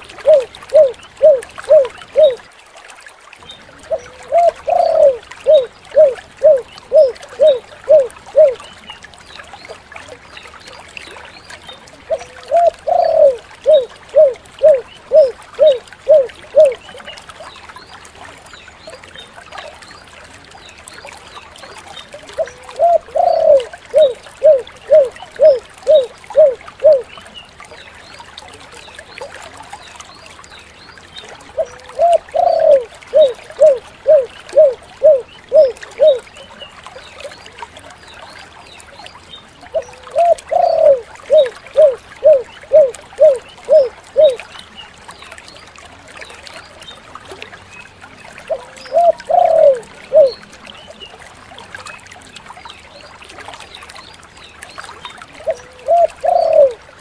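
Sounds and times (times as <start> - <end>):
dove cooing: 0.2 - 2.4, 3.9 - 8.6, 12.1 - 16.9, 22.4 - 27.1, 31.6 - 36.3, 39.7 - 44.4, 48.5 - 50.4, 55.4 - 56.8.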